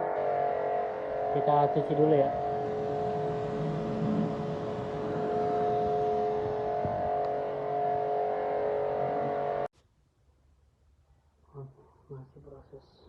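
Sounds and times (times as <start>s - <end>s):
pressure washer whine: 0.0s - 9.7s.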